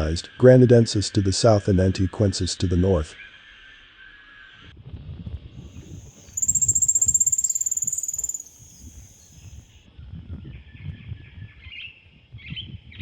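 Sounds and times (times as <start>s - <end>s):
bird high thin trill: 6.2s - 9.4s.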